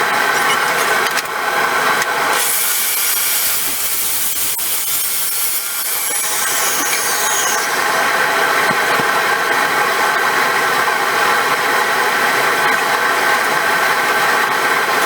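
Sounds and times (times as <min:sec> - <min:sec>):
power saw cutting wood: 0:00.0 - 0:10.6.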